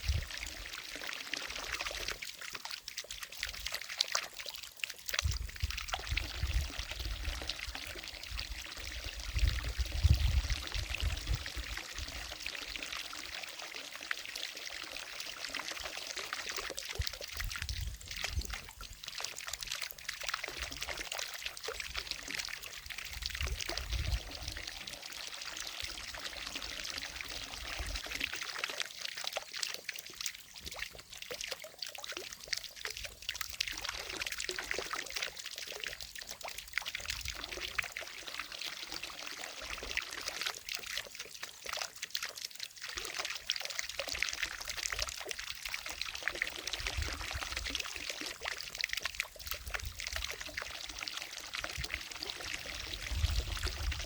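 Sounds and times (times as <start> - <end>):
fountain water splashing: 0.0 - 8.2.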